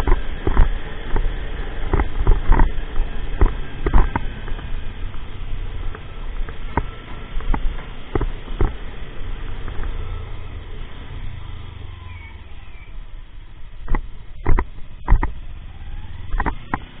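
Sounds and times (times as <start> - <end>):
sharp knocks or pops: 0.0 - 4.7, 5.9 - 8.8, 13.8 - 15.4, 16.3 - 17.0
motorcycle engine idling: 0.0 - 17.0.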